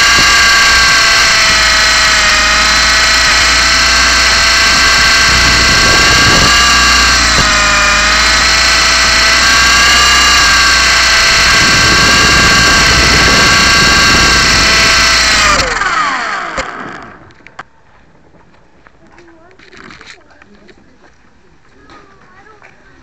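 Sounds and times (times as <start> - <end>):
rc helicopter motor whining: 0.0 - 17.5.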